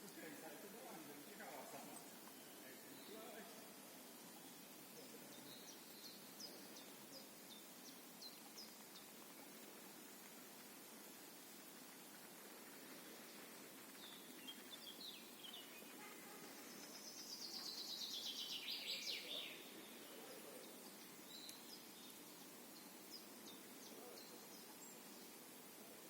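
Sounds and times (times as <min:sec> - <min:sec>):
faint outdoor hiss: 0:00.0 - 0:26.0
songbirds singing faintly: 0:00.0 - 0:26.0
bird chirps: 0:14.0 - 0:25.2.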